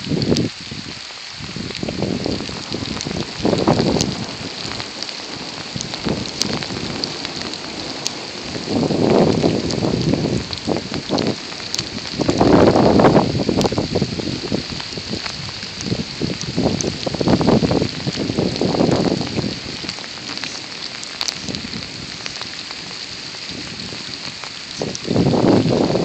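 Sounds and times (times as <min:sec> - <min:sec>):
steady rain: 0:00.0 - 0:26.0.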